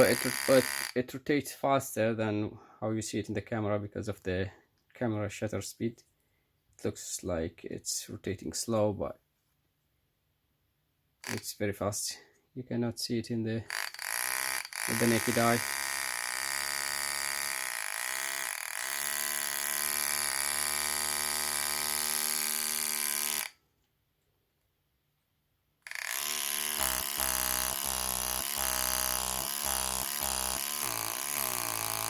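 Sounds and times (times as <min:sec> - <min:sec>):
breast pump motor whine: 0:00.0 - 0:00.9, 0:25.9 - 0:32.0.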